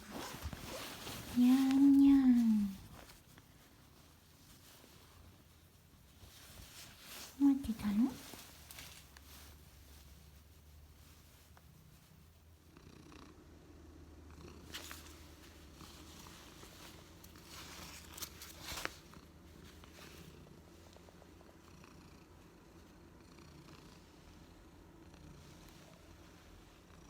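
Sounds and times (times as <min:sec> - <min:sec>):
rustling and clicks: 0:00.0 - 0:12.2, 0:14.6 - 0:21.4
cat purring: 0:00.0 - 0:27.0.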